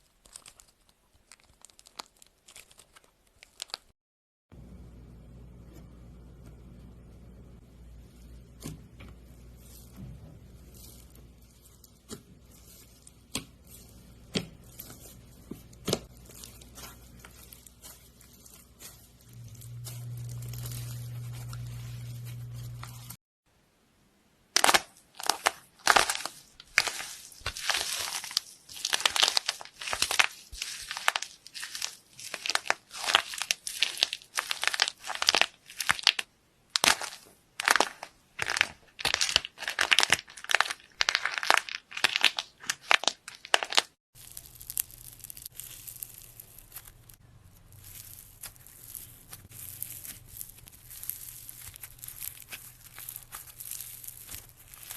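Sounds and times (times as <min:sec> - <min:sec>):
crunchy material crackling: 0:00.0 - 0:04.0, 0:08.2 - 0:23.2, 0:24.6 - 0:54.9
low hum: 0:19.0 - 0:23.2.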